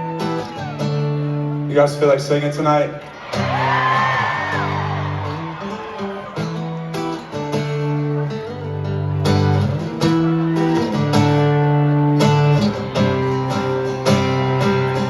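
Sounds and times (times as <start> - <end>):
strummed electric guitar chords: 3.4 - 15.0.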